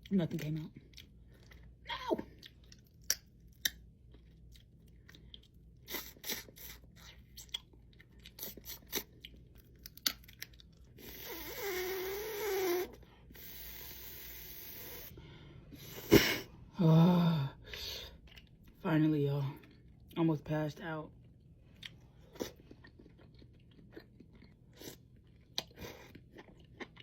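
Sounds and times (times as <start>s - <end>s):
crab shell cracking: 2.7s - 3.8s, 9.7s - 10.7s.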